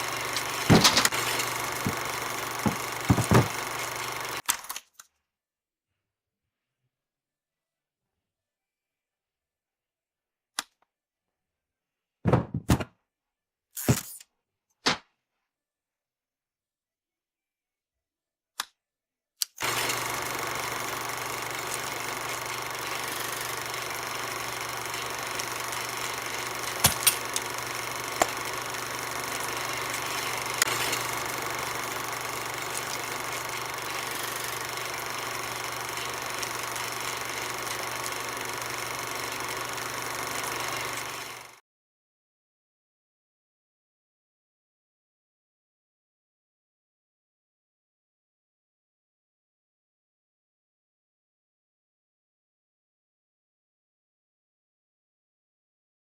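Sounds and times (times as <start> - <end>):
film projector humming: 0.0 - 4.7, 19.6 - 41.6
sharp clicks: 19.4 - 41.5.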